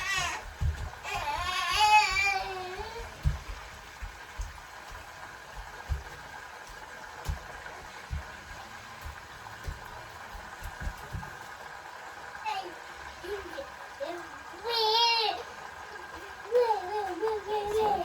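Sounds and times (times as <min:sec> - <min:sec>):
soft low thumps: 0:00.0 - 0:11.4
food sizzling and bubbling in pans: 0:00.0 - 0:18.0.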